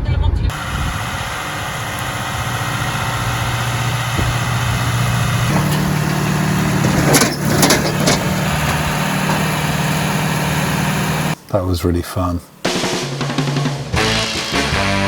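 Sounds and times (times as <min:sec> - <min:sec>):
tractor engine running: 0:00.5 - 0:13.6
short rattles: 0:05.0 - 0:11.4.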